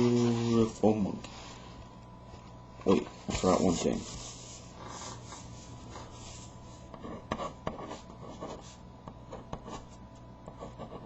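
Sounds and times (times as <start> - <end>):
pen scratching on paper: 3.9 - 11.0.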